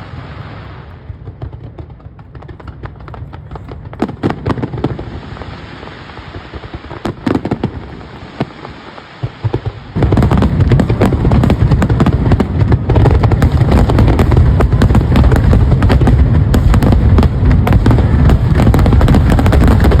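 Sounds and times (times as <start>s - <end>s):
fireworks booming and crackling: 0.0s - 20.0s.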